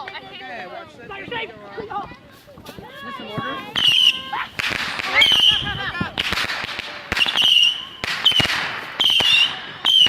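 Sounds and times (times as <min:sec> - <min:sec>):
fireworks crackling bursts: 0:02.3 - 0:10.0
fireworks whistling: 0:03.7 - 0:10.0.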